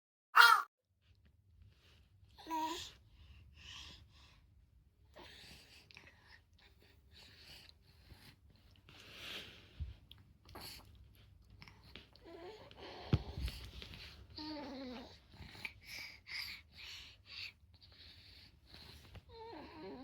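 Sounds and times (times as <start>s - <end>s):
baby cooing: 0.4s - 0.6s.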